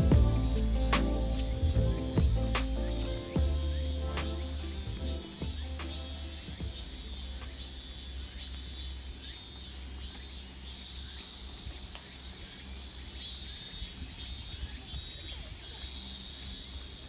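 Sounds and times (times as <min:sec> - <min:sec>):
faint low rumble: 0:00.0 - 0:09.3.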